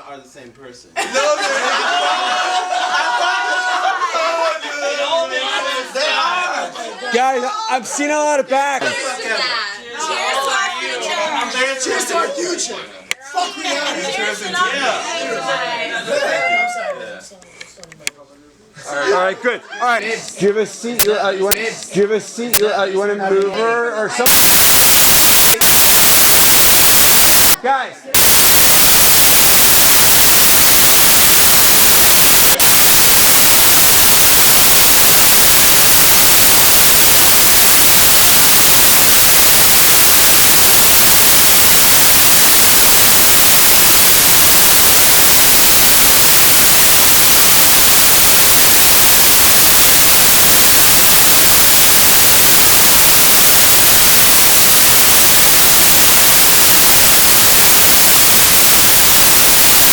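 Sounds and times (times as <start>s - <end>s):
loud static hiss: 24.3s - 27.6s, 28.2s - 59.9s.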